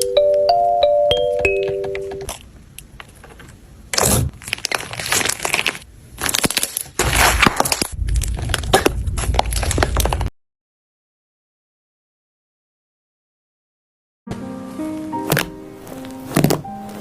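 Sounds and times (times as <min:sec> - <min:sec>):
dull squishing: 0:03.9 - 0:10.3
slime crackling and popping: 0:03.9 - 0:10.3.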